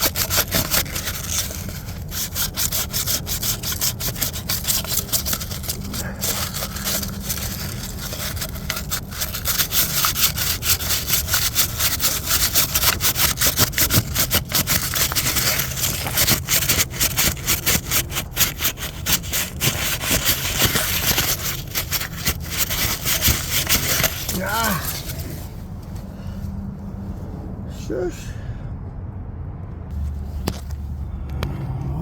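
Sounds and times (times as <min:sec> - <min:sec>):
sandpaper scrubbing: 0:00.0 - 0:25.6.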